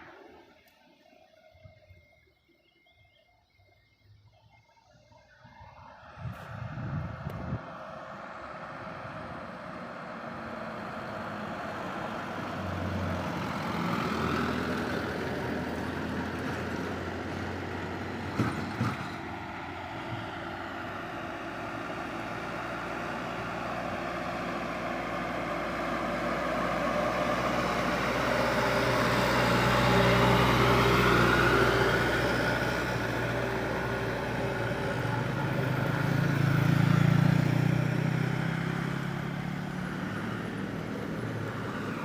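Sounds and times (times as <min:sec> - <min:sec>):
heavy road traffic: 0:00.0 - 0:42.0
large vehicle engines humming: 0:00.0 - 0:42.0.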